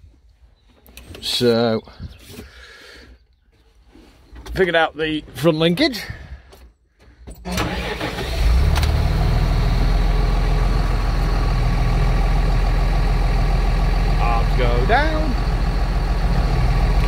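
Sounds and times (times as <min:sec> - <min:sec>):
tractor engine starting and idling: 0:07.3 - 0:17.0.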